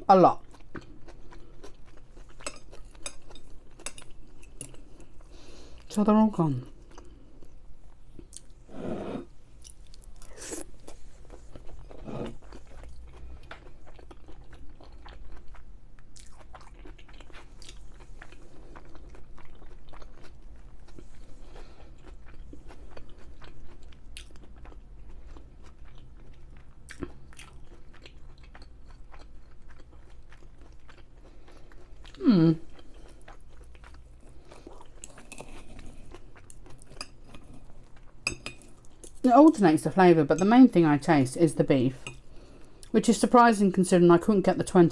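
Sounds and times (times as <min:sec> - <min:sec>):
person chewing food: 0:00.4 - 0:05.9, 0:06.6 - 0:39.2, 0:42.0 - 0:43.0.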